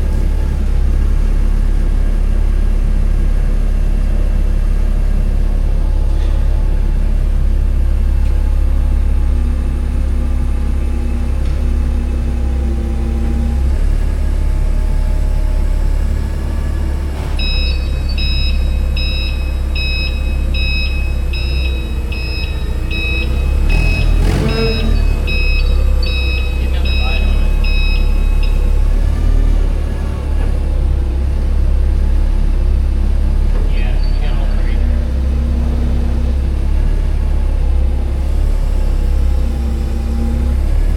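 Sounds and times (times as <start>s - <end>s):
truck engine rumbling: 0.0s - 40.9s
high electronic beeps: 17.4s - 28.8s.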